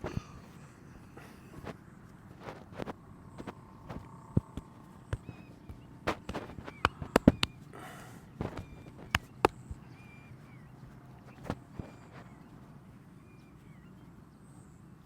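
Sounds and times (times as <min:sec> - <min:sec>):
hands rubbing: 0:00.0 - 0:10.1, 0:10.9 - 0:12.6
hands slapping during massage: 0:02.4 - 0:07.6, 0:08.4 - 0:09.8.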